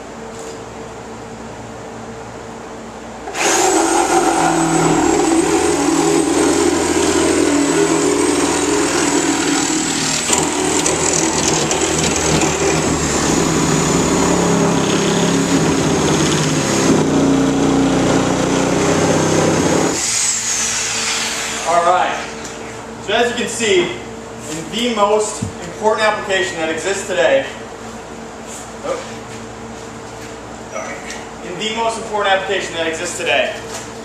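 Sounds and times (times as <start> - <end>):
reciprocating saw cutting: 3.3 - 21.7.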